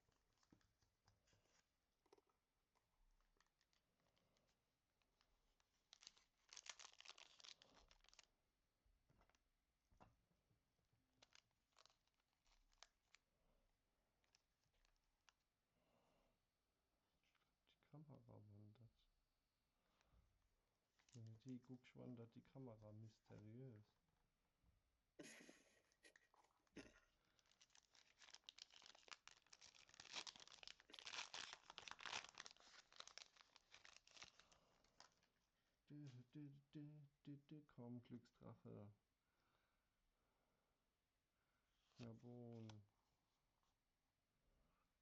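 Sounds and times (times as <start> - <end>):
cards and wrappers crinkling: 3.2 - 8.3, 11.1 - 13.3, 27.4 - 35.3.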